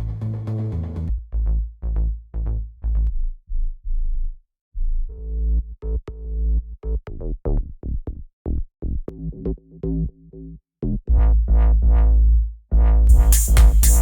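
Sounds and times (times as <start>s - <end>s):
heavy bass: 0.0s - 14.0s
drum machine drums with hi-hats: 13.1s - 14.0s.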